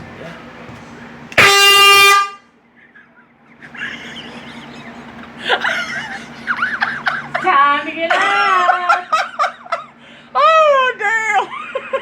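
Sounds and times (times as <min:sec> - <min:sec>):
air horn blast: 0:01.3 - 0:02.6.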